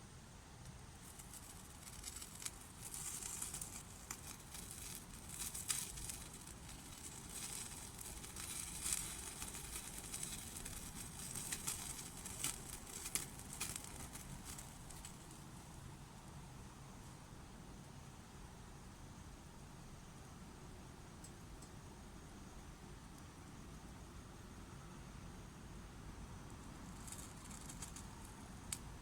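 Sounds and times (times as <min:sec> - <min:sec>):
wood fire crackling: 0:00.9 - 0:16.3, 0:26.7 - 0:29.0.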